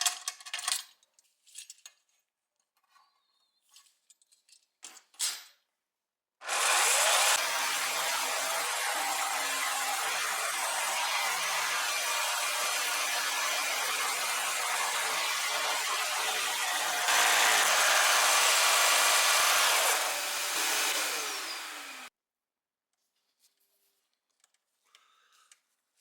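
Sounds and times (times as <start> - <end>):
jigsaw sawing wood: 6.4 - 22.1
motor winding down whine: 6.4 - 22.1.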